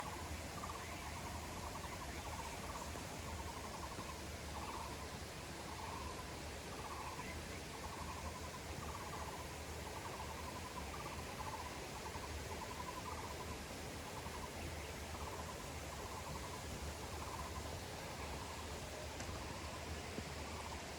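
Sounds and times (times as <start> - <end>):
steady background hiss: 0.0 - 20.9.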